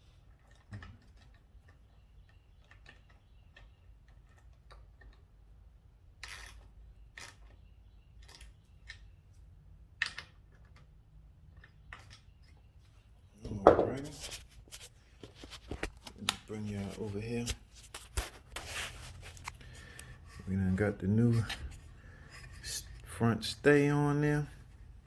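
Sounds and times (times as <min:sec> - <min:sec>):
sharp knocks: 0:13.5 - 0:14.1.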